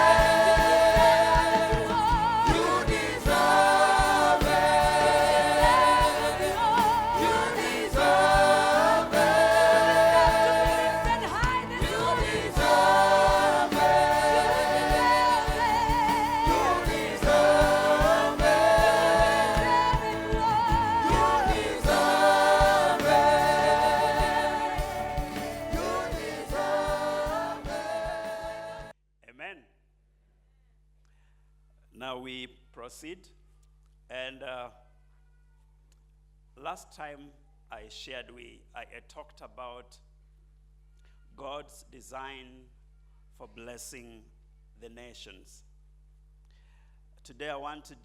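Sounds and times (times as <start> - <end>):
band with steady beat: 0.0 - 28.9
choir and congregation singing: 0.0 - 28.9.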